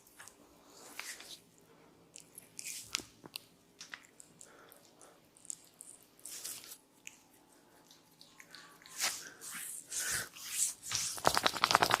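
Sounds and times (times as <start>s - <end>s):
person exhaling and sniffing: 8.9s - 10.8s.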